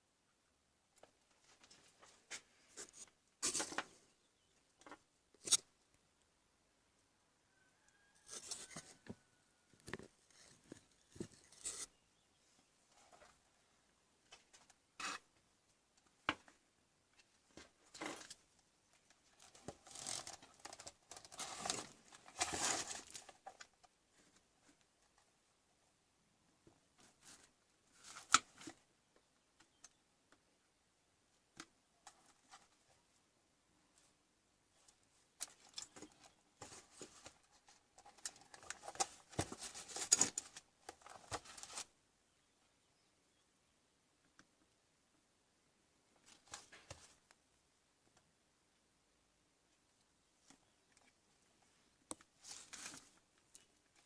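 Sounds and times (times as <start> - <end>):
rustling handling noise: 1.0 - 4.1, 16.0 - 25.4, 26.9 - 28.8, 33.9 - 42.0, 50.4 - 54.0
object being handled: 8.1 - 12.0, 34.7 - 41.9, 50.4 - 54.0.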